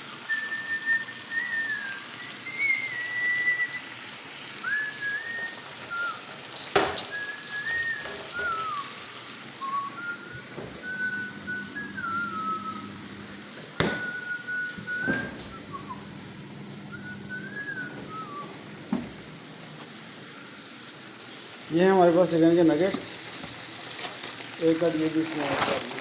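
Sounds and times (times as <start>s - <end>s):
person whistling a tune: 0.1s - 4.0s, 4.6s - 13.0s, 13.8s - 16.2s, 16.9s - 18.6s
sharp knocks: 13.8s - 14.2s.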